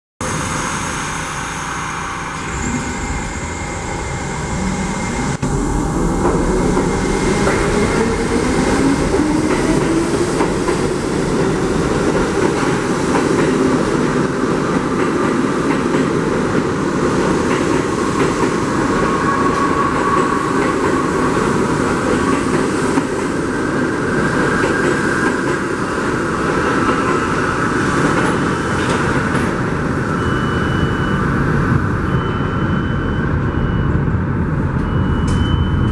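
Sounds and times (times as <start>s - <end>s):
train wheels clattering on rails: 6.1s - 29.8s.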